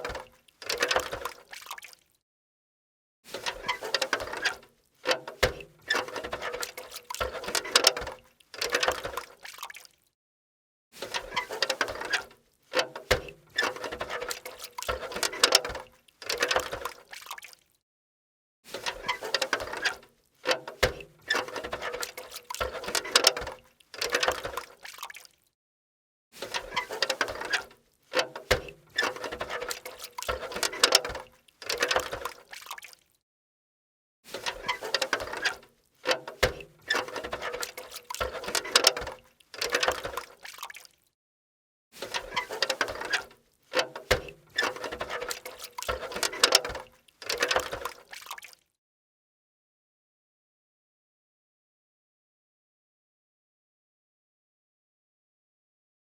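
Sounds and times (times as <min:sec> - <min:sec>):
steel bucket clanking: 0:03.4 - 0:09.3, 0:11.1 - 0:16.9, 0:18.9 - 0:24.7, 0:26.5 - 0:32.4, 0:34.4 - 0:40.3, 0:42.0 - 0:48.0.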